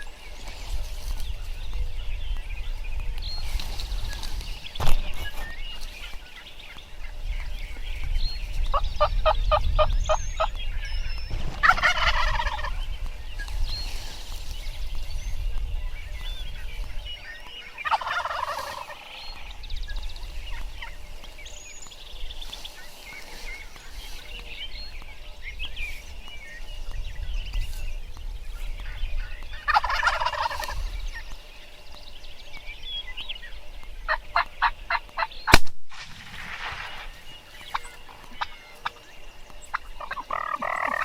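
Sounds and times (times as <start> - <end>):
wind on microphone: 0.0 - 38.5
wild turkey gobbling: 11.6 - 12.9, 17.6 - 19.6, 28.8 - 31.4, 34.1 - 35.6, 36.5 - 39.0, 39.6 - 41.0
loud sharp crack: 35.5 - 37.2.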